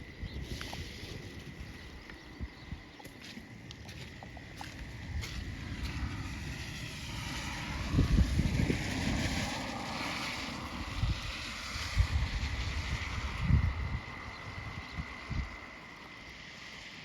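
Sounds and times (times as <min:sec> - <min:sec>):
wind buffeting microphone: 0:00.0 - 0:16.5
rain hiss: 0:03.5 - 0:17.0.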